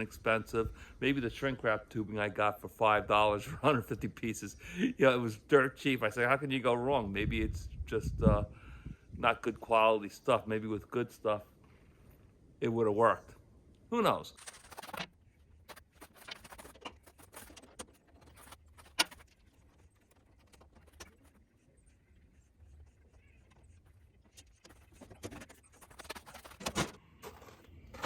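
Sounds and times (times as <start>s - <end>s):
faint rustling: 14.3s - 28.0s.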